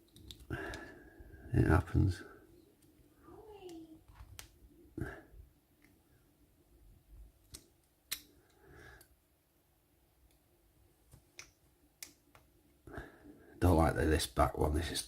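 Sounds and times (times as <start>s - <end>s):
metal clicks and taps: 7.5s - 8.3s.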